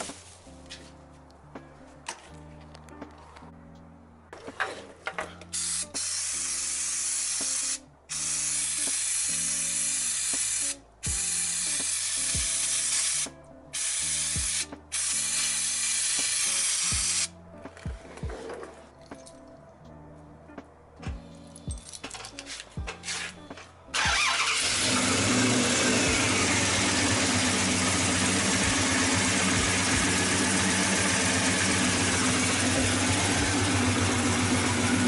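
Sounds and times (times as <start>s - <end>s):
background music: 0.0s - 35.0s
aerosol spray hissing: 5.6s - 17.3s.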